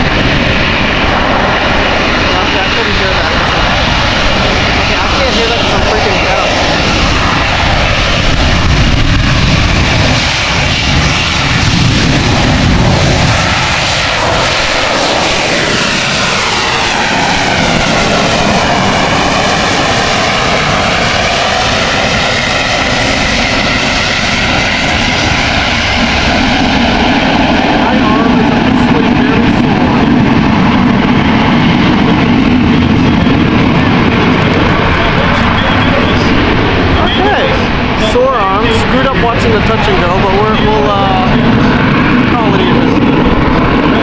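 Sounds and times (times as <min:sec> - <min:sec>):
jet engine roaring with whine: 0:00.0 - 0:44.0.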